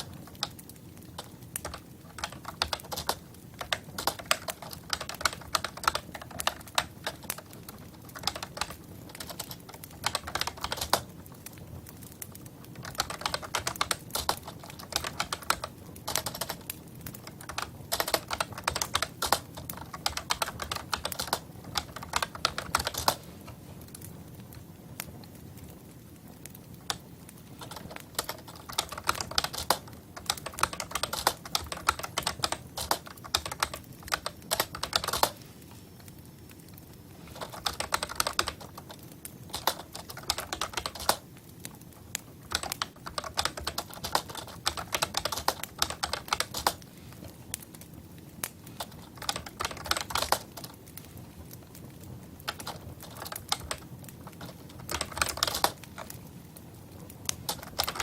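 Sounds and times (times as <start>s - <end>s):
keyboard typing clicks: 27.6s - 35.4s, 37.4s - 41.2s, 54.4s - 56.1s.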